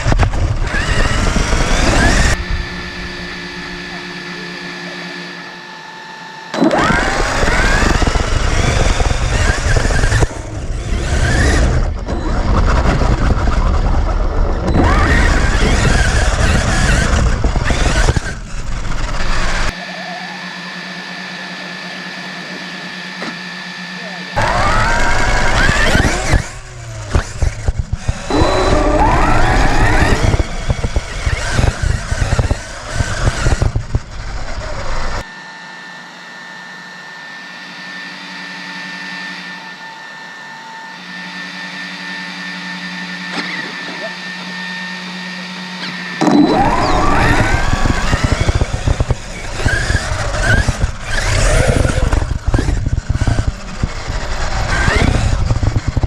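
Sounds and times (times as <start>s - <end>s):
rumble and rattle on rough ground: 0.0s - 3.8s, 6.8s - 19.8s, 24.4s - 35.2s, 46.2s - 56.0s
rc truck electric motor whine: 0.0s - 56.0s.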